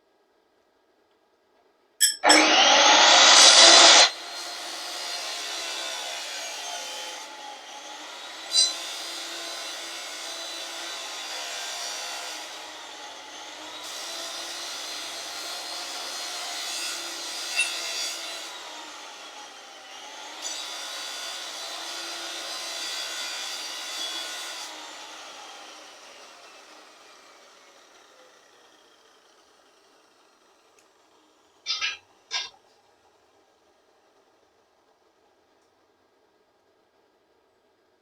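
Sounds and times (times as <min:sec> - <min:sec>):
sharp metallic knocks: 0:02.0 - 0:02.6, 0:08.5 - 0:08.8
power tool grinding metal: 0:02.2 - 0:30.3, 0:31.7 - 0:32.6.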